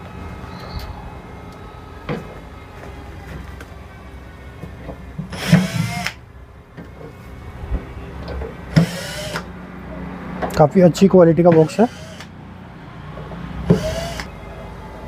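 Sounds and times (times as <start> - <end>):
power drill whining: 5.3 - 6.2, 8.7 - 9.5, 11.5 - 12.3, 13.7 - 14.4.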